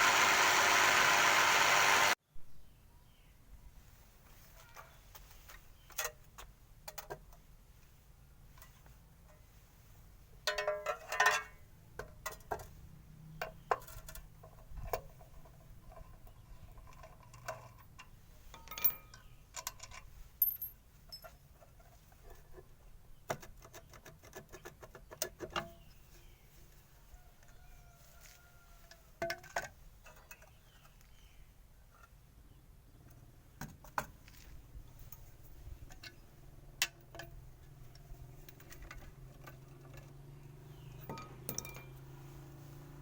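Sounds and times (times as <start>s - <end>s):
light metallic clinks and taps: 17.0s - 21.4s, 40.9s - 42.1s.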